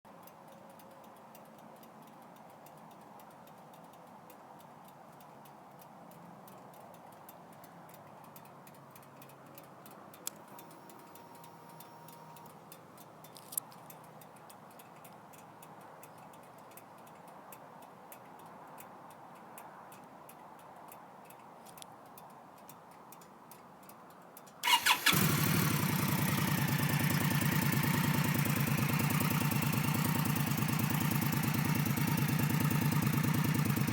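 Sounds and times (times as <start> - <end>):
faint clicks: 0.1 - 25.4
motorcycle engine starting and idling: 24.6 - 33.9.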